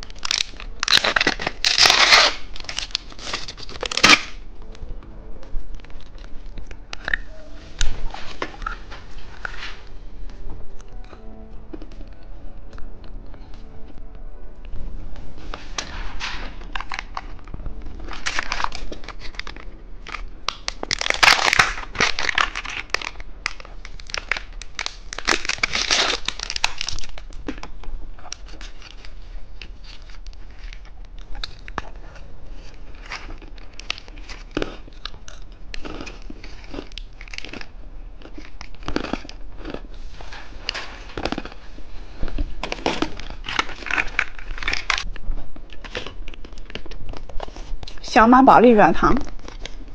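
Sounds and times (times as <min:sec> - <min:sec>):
plastic wrappers crinkling: 0:00.0 - 0:04.8, 0:15.4 - 0:49.9.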